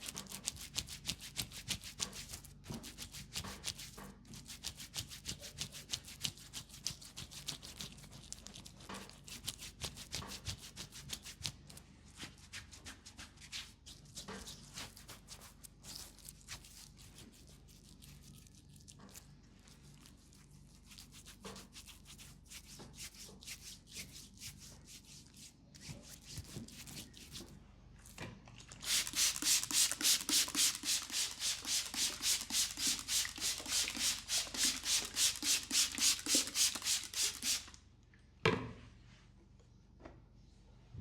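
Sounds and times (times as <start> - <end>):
palms rubbing skin: 13.9 - 27.5, 28.8 - 37.7.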